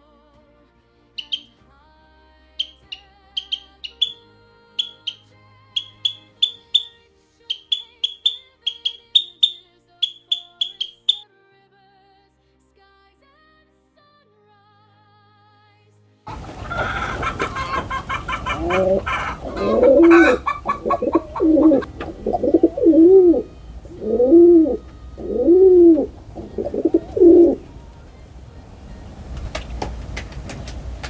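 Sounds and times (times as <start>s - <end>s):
higher chirping notes: 16.3s - 29.4s
pigeons cooing: 16.3s - 31.0s.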